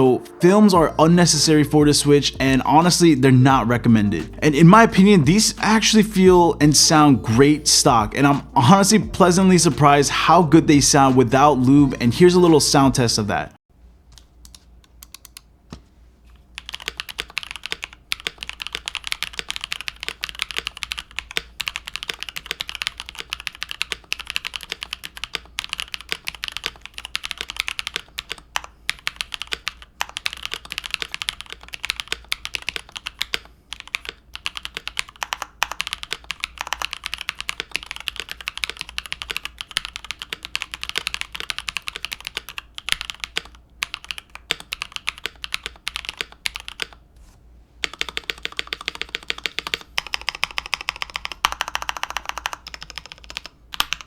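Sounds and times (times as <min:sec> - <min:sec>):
mechanical keyboard typing: 0:14.2 - 0:15.5, 0:16.6 - 0:47.0, 0:47.8 - 0:54.0.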